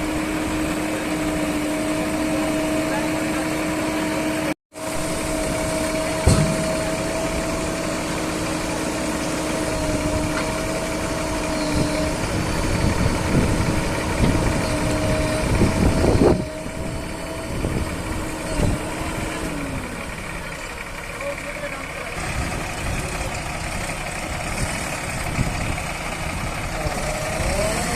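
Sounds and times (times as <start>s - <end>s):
diesel engine whining: 0.0s - 27.9s
metal knocks and clanks: 6.1s - 7.2s.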